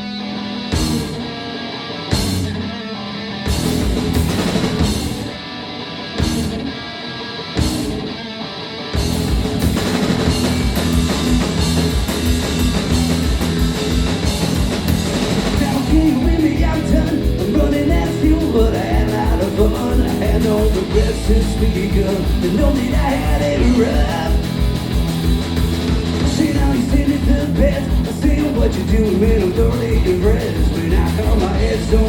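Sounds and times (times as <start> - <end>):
electric guitar: 0.0 - 32.0
punk rock band playing: 0.0 - 32.0
drum and cymbal hits: 3.5 - 5.3, 9.0 - 32.0.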